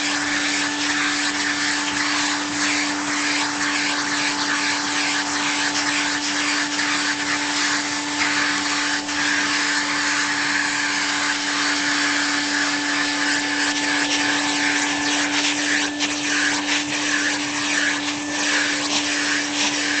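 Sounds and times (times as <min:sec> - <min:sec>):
vacuum cleaner running: 0:00.0 - 0:20.0.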